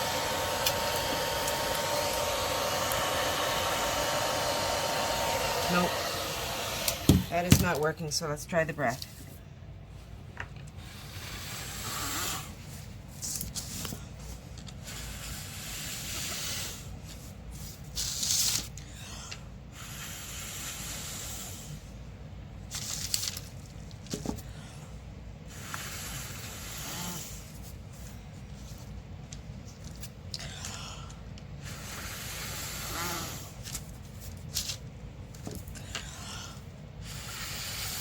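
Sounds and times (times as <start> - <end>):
person blowing hissing breaths: 10.8 - 12.7, 14.8 - 17.0, 18.8 - 21.9, 24.4 - 27.6, 30.4 - 33.6, 35.8 - 38.0.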